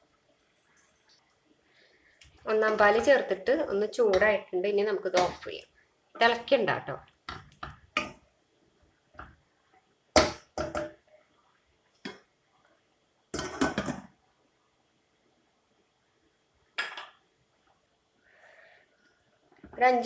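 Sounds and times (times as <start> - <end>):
pots and utensils clinking: 13.4 - 14.1.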